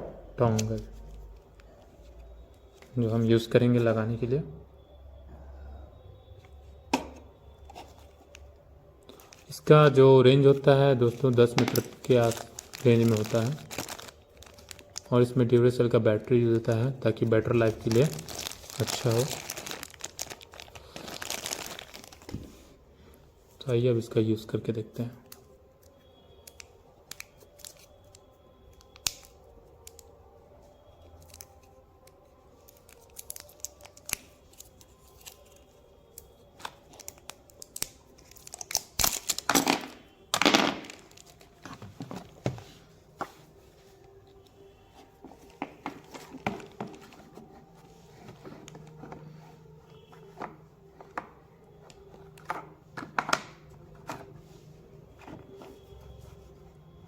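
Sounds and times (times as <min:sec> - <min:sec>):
packaging tearing: 0:11.2 - 0:15.1, 0:17.7 - 0:22.3, 0:32.6 - 0:35.7, 0:36.9 - 0:41.6
plastic parts clicking and rustling: 0:11.2 - 0:15.1, 0:32.6 - 0:42.6, 0:45.3 - 0:47.4.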